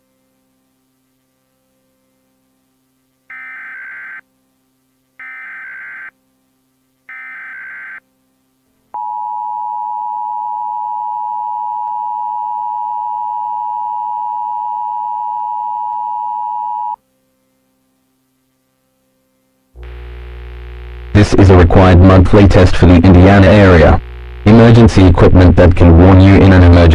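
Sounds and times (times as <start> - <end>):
data tone bursts: 3.3 - 4.2, 5.2 - 6.1, 7.1 - 8.0.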